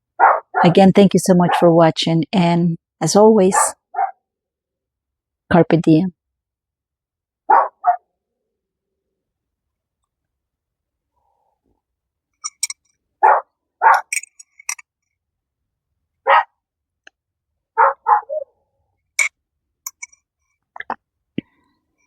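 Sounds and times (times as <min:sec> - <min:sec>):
dog barking: 0:00.2 - 0:00.7, 0:03.5 - 0:04.2, 0:07.5 - 0:08.1, 0:13.2 - 0:14.1, 0:16.2 - 0:16.6, 0:17.8 - 0:18.6.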